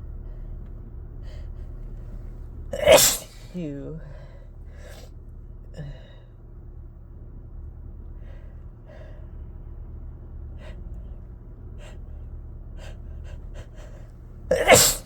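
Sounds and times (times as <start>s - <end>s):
sharp intakes of breath: 0.0s - 5.2s, 11.8s - 15.0s
low steady hum: 0.0s - 15.0s.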